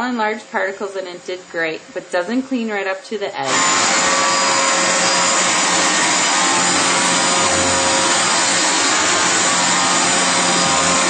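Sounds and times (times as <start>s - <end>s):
vacuum cleaner motor whine: 3.4s - 11.0s.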